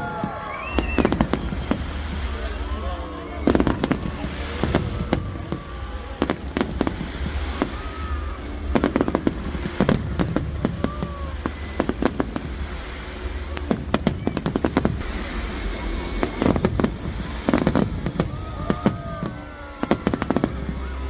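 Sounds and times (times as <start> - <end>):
firework whistling: 0.0 - 21.0
fireworks bangs and crackles: 0.0 - 21.0
low rumble: 0.0 - 21.0.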